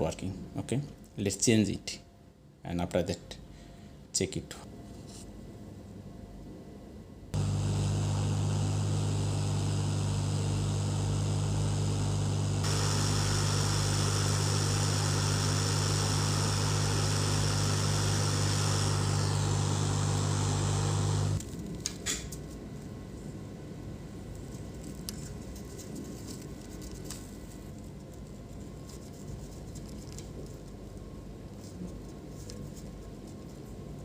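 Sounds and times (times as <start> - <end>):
hot air station fan hum: 7.4 - 21.4
rushing hiss of air: 12.6 - 21.4.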